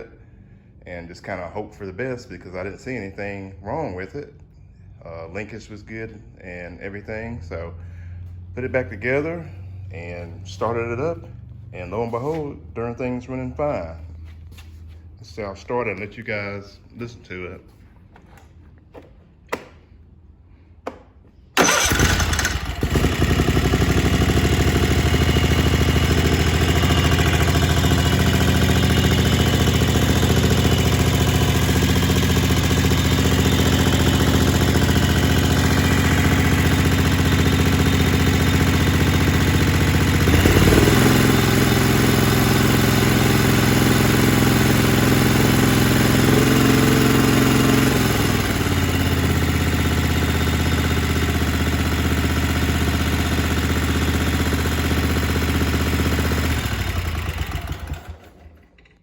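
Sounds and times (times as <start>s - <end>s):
lawn tractor engine running: 21.6s - 59.0s.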